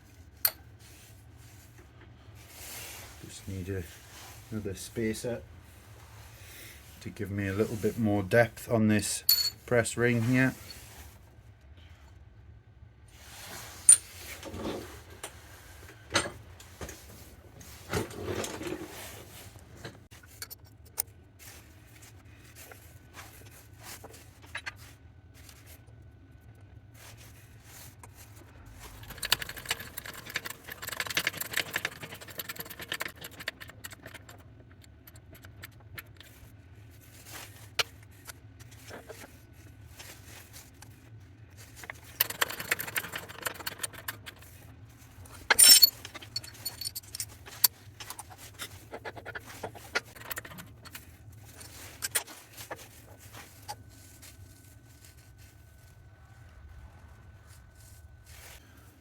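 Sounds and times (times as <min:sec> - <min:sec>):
metal parts rattling: 0:08.6 - 0:10.8, 0:28.7 - 0:36.4, 0:41.6 - 0:54.2
small metal parts clinking: 0:08.6 - 0:10.8, 0:13.8 - 0:14.2, 0:28.8 - 0:36.4, 0:41.6 - 0:44.6, 0:45.2 - 0:54.8.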